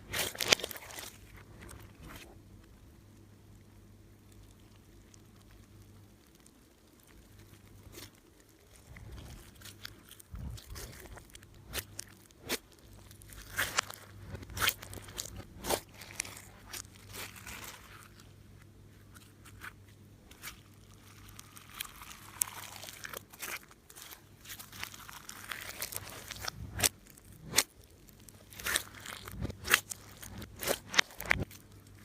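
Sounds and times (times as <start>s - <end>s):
slime squeezed with crunchy clicks: 8.9s - 18.2s, 20.3s - 32.0s.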